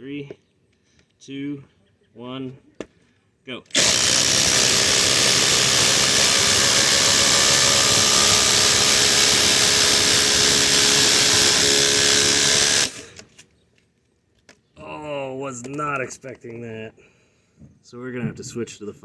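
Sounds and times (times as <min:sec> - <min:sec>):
impact drivers hammering: 0:03.7 - 0:13.3.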